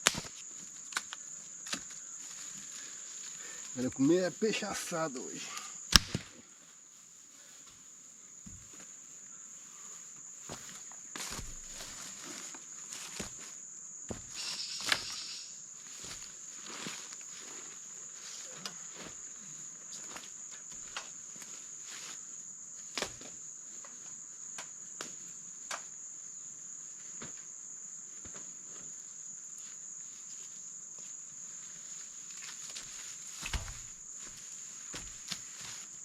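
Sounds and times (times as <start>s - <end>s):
sharp snaps and knocks: 0.0s - 1.9s, 5.9s - 6.4s, 22.9s - 23.3s, 24.6s - 25.9s
high-pitched insect drone: 8.5s - 17.4s.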